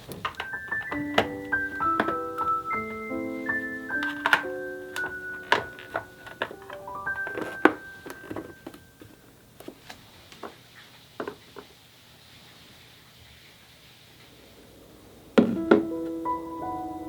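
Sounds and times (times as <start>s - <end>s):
plastic containers knocking: 0.0s - 9.8s, 15.4s - 16.2s
faint hiss: 8.8s - 17.0s.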